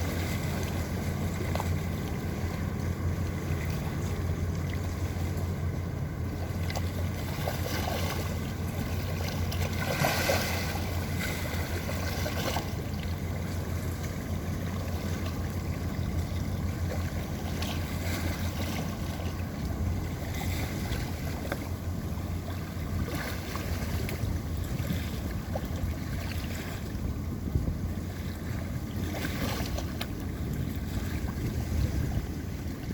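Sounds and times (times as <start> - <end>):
boat engine drone: 0.0 - 32.9
water noise: 0.0 - 32.9
water swish: 0.0 - 32.9
wind on microphone: 0.0 - 32.9.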